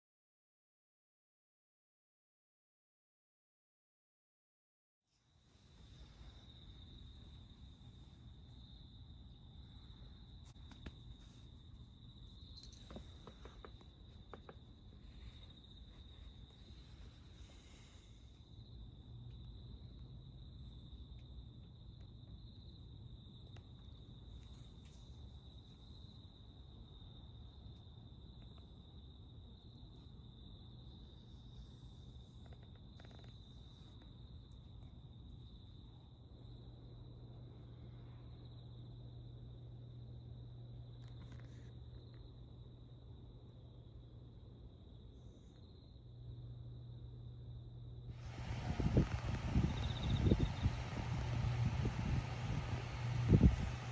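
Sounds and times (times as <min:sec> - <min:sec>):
cricket trilling: 0:05.8 - 0:53.9
low hum: 0:47.3 - 0:53.9.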